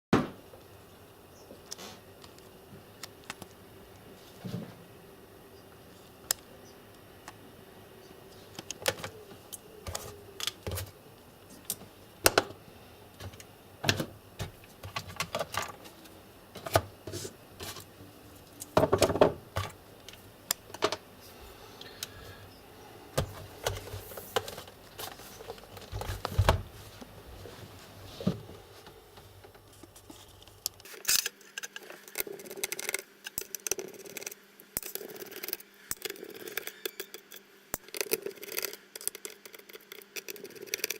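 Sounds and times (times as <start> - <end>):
small parts and tools clattering: 13.2 - 21.0.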